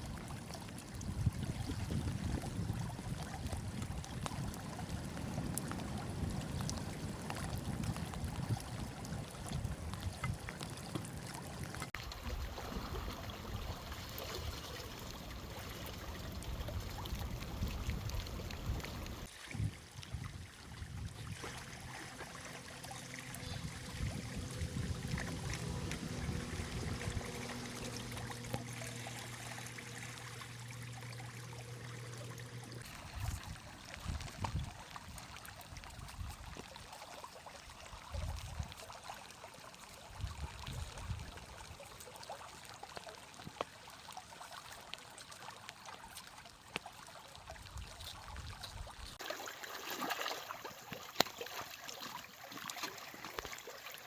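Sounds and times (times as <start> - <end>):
water running and trickling: 0.0 - 54.0
steady low hum: 20.9 - 33.6.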